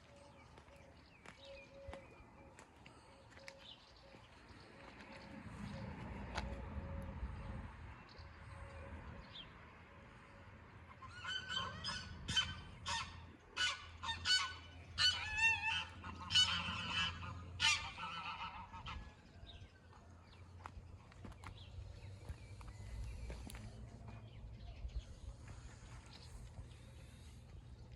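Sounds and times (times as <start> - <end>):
harsh honking bird calls: 11.0 - 19.0.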